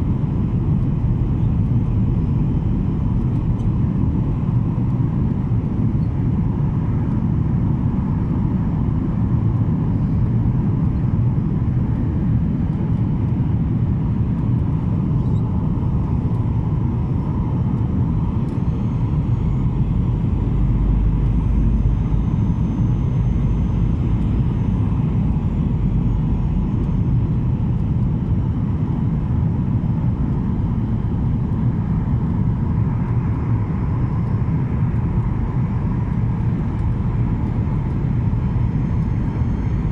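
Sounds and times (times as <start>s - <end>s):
jet engine and airflow rumble: 0.0s - 39.9s.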